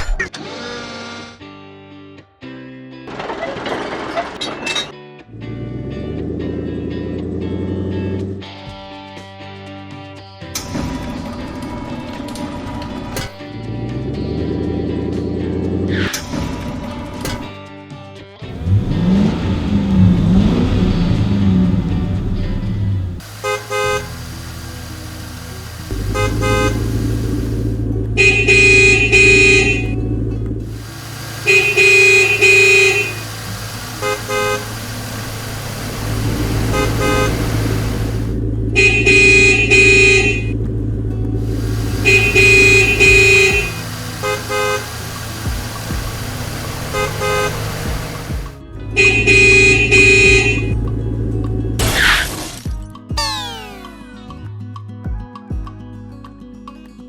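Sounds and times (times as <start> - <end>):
cartoon background music: 0.0 - 2.1, 51.7 - 54.6
car horn honks: 18.5 - 30.1, 30.7 - 40.6, 41.4 - 50.8.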